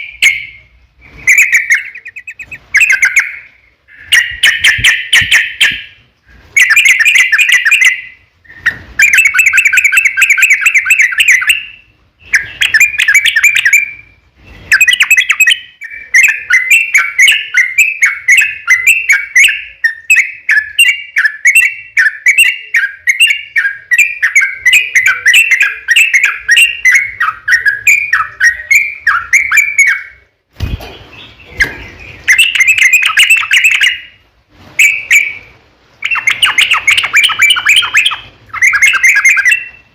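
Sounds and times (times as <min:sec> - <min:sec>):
bird chattering song: 0:00.0 - 0:34.2, 0:34.8 - 0:39.9.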